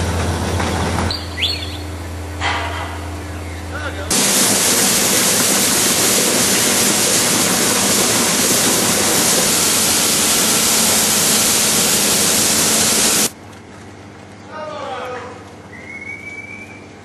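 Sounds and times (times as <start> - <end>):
water spray rushing: 4.1 - 13.3.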